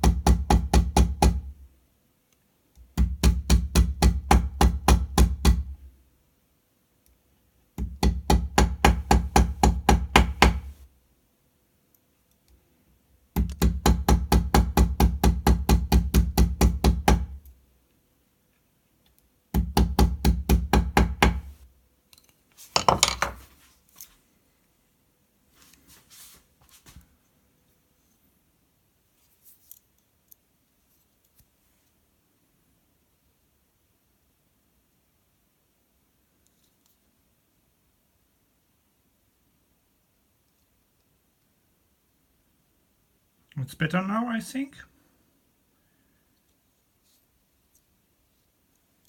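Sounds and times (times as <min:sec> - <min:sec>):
hammer tapping on metal: 0:07.8 - 0:10.8.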